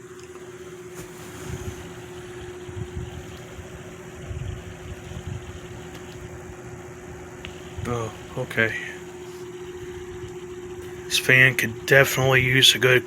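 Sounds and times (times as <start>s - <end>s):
box fan humming: 0.0s - 13.0s
wind buffeting microphone: 1.3s - 8.3s.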